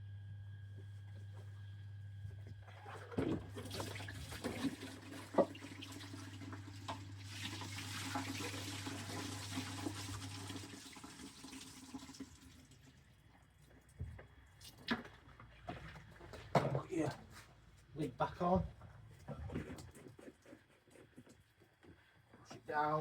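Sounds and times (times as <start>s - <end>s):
low steady hum: 0.0s - 5.6s.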